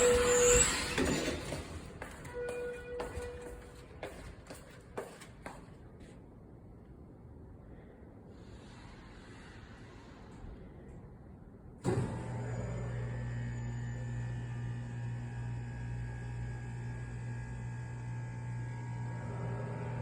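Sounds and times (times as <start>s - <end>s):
loud machinery hum: 0.0s - 1.8s, 11.8s - 20.0s.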